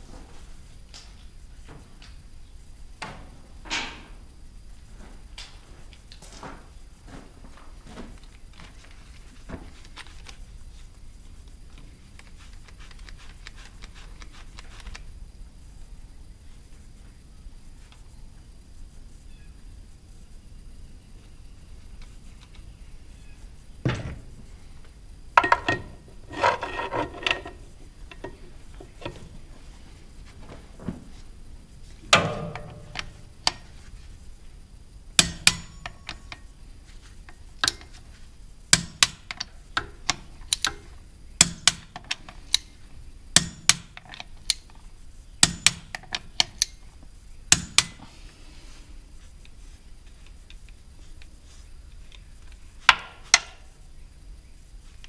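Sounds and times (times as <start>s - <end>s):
tools clattering: 25.4s - 29.4s, 32.0s - 33.8s.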